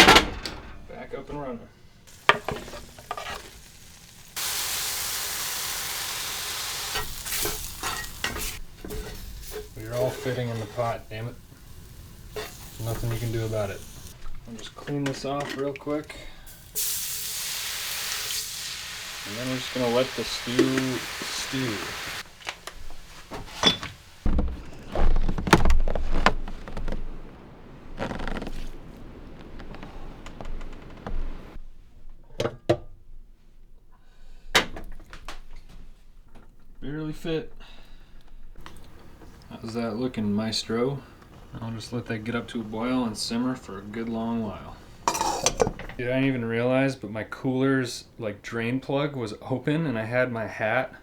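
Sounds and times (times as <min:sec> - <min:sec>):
cooking pot and lid clunking: 0:00.0 - 0:01.4, 0:02.1 - 0:03.6, 0:06.9 - 0:10.5, 0:23.3 - 0:25.4, 0:44.8 - 0:46.1
stirring knocks and scrapes: 0:00.7 - 0:04.4, 0:06.9 - 0:16.5, 0:19.9 - 0:31.6, 0:38.6 - 0:46.3
food sizzling in a pot: 0:02.1 - 0:24.3, 0:38.6 - 0:46.4
short rustle: 0:21.6 - 0:31.6.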